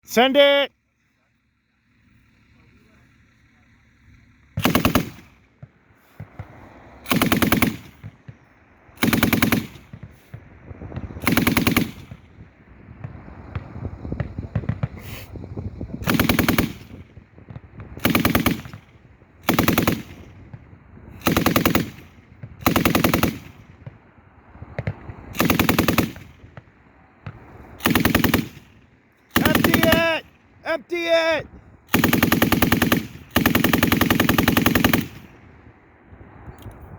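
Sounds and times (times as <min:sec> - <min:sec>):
machine gun firing bursts: 0:04.5 - 0:12.5, 0:16.0 - 0:23.8, 0:24.9 - 0:26.7, 0:27.8 - 0:30.4, 0:31.9 - 0:35.6.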